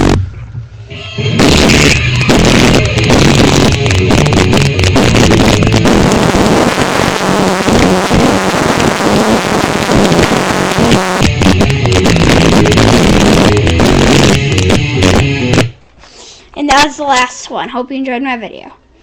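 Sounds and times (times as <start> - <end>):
loud bass-heavy music: 0.0 - 0.3, 0.9 - 15.8.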